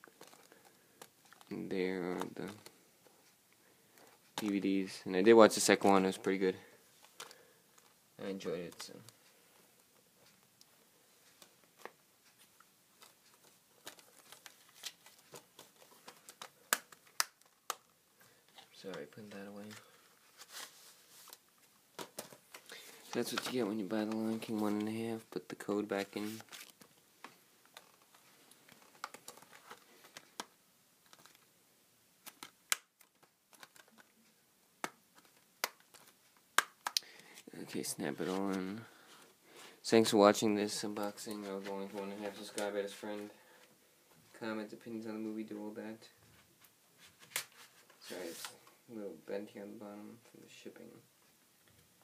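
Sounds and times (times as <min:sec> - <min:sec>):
paper rustling: 0:11.3 - 0:25.0, 0:25.9 - 0:31.5, 0:37.3 - 0:39.2, 0:46.4 - 0:48.7.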